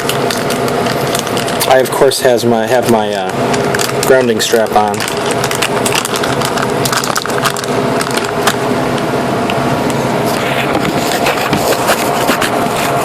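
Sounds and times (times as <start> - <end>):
packaging crackling and clicking: 0.0 - 1.8, 3.2 - 9.1.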